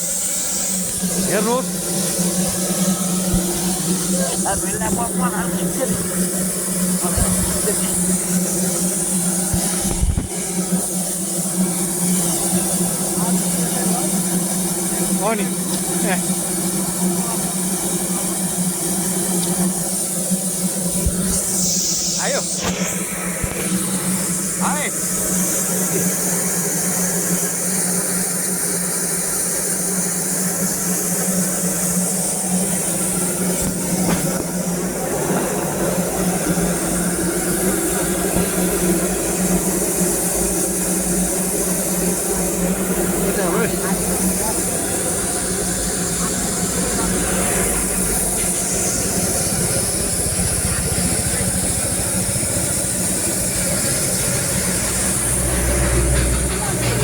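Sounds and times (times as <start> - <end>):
steam hissing: 0.0 - 57.0.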